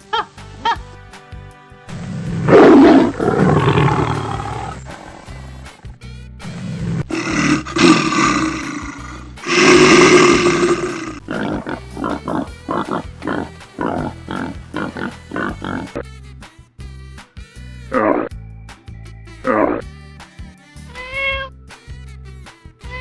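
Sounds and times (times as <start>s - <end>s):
background music: 0.0s - 23.0s
animal roaring: 2.0s - 5.4s, 6.5s - 16.0s, 17.9s - 18.3s, 19.5s - 19.8s.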